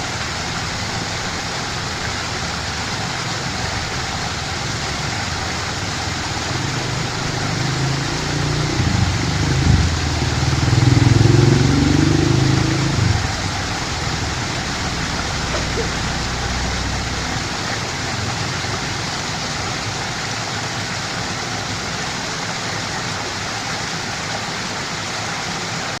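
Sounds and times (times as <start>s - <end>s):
river water rushing: 0.0s - 26.0s
low rumble: 5.2s - 19.3s.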